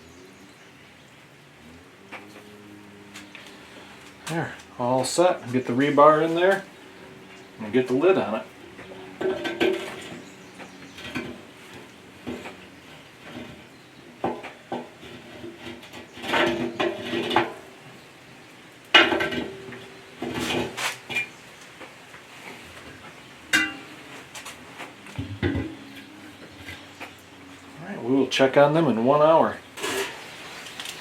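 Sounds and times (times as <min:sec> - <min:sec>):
metal rods clanking: 0:04.0 - 0:17.8, 0:23.5 - 0:24.0.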